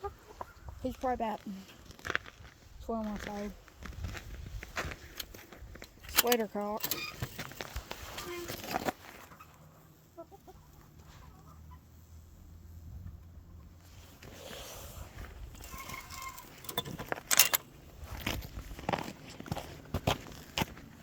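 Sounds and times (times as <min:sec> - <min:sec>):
chickens clucking: 0:00.0 - 0:01.2, 0:09.2 - 0:13.8.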